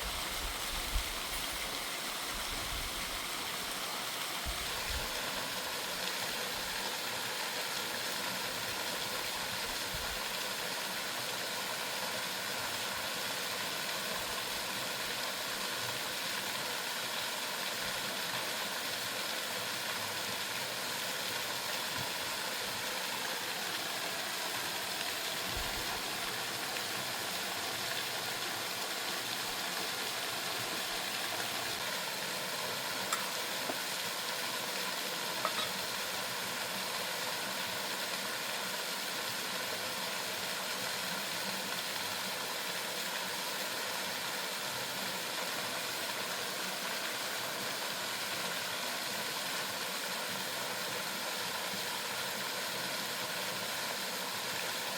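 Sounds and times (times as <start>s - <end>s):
waterfall rushing: 21.8s - 37.0s.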